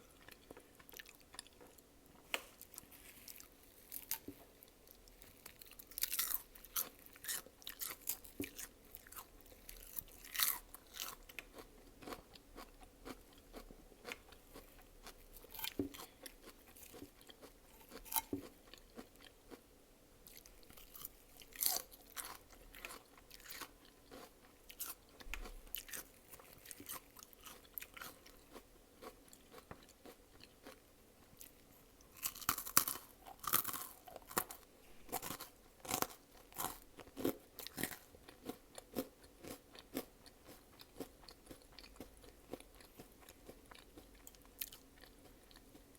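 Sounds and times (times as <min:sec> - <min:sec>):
chewing and crunching food: 0:00.0 - 0:45.9.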